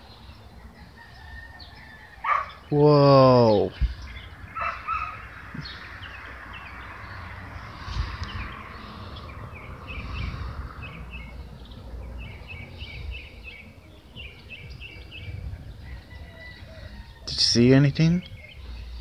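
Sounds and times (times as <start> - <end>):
birds chirping: 0.0 - 19.0
steady low rumble: 3.7 - 17.2.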